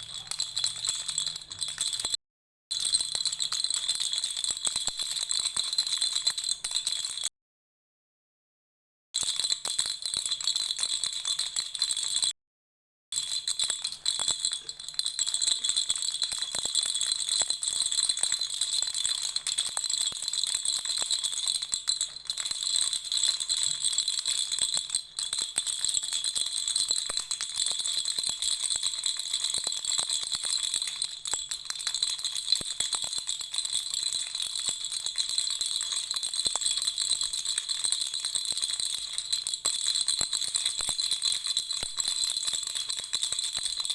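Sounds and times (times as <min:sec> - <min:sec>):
baby rattle jingling: 0:00.0 - 0:02.1.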